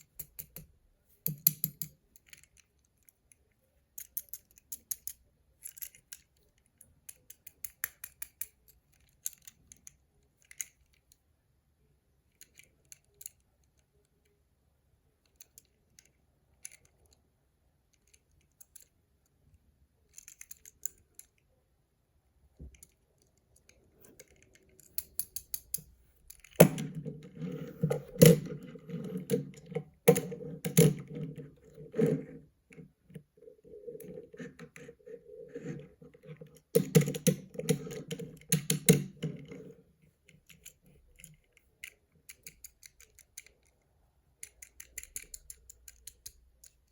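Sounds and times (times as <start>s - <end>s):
plastic toy clattering rattle: 24.1s - 39.7s.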